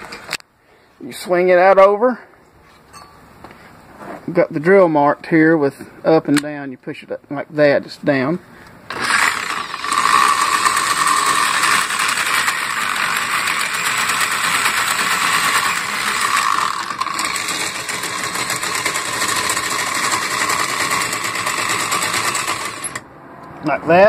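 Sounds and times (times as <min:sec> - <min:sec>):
electric drill running: 0:08.9 - 0:23.0
winch gears clicking rapidly: 0:08.9 - 0:23.0.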